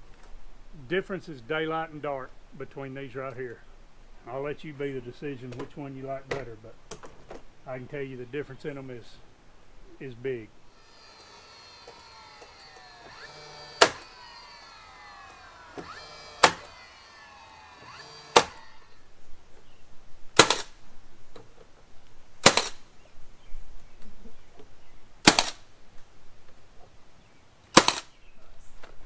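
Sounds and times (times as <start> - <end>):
nail gun firing: 10.8 - 19.0, 20.4 - 20.8, 22.4 - 22.9, 25.2 - 25.7, 27.7 - 28.2.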